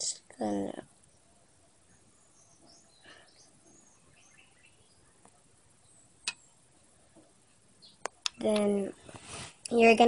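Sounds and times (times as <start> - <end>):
faint high chirps: 0.8 - 6.8.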